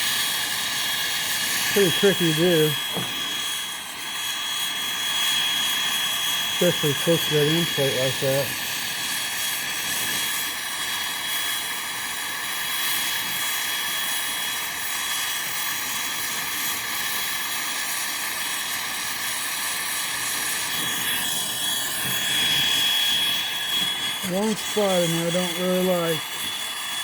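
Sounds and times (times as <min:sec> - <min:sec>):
torch flame hissing: 0:00.0 - 0:27.0
thin high whistle: 0:20.6 - 0:27.0.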